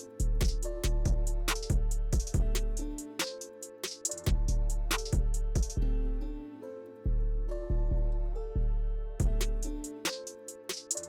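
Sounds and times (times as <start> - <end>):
hip-hop background music: 0.0 - 5.9, 9.0 - 11.0.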